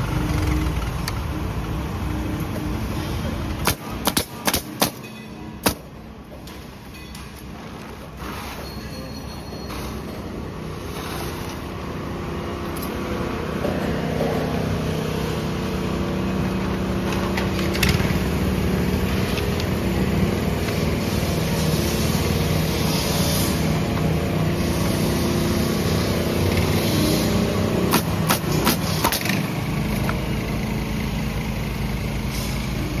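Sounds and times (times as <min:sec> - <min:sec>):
engine running under load: 0:00.0 - 0:33.0
sharp metallic clanks: 0:03.6 - 0:07.6.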